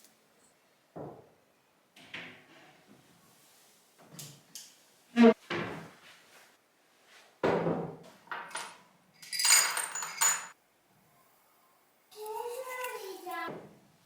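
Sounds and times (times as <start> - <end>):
jars clinking: 9.2 - 10.6.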